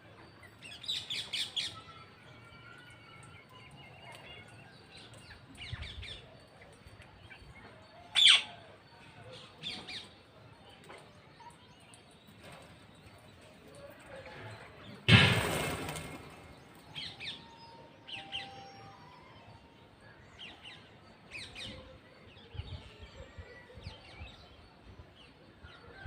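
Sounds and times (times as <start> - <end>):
parrots squawking and chirping: 8.2 - 8.5.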